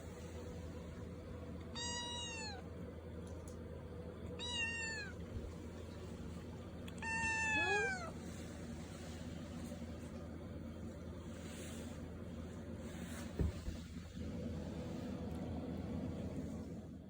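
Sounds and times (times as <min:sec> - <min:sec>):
kitten meowing: 0:01.7 - 0:02.6, 0:04.4 - 0:05.2, 0:06.9 - 0:08.2.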